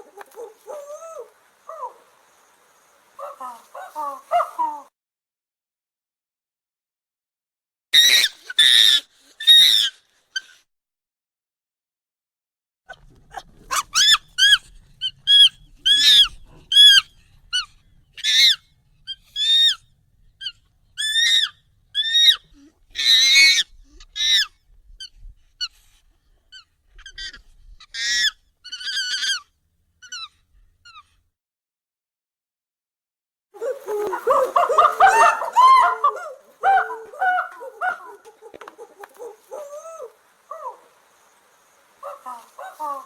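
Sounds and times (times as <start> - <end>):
high-pitched monkey squeals: 8.0 - 10.6, 13.3 - 19.8, 20.4 - 25.7, 26.5 - 31.2, 33.6 - 40.8.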